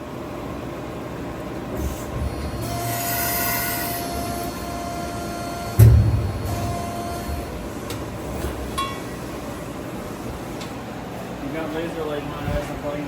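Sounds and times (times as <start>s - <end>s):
machine whining and hissing: 1.1s - 11.3s
heavy thump: 5.8s - 6.8s.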